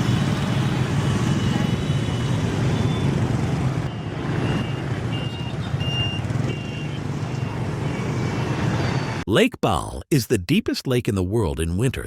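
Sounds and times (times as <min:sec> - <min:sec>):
motorcycle traffic drone: 0:00.0 - 0:09.3.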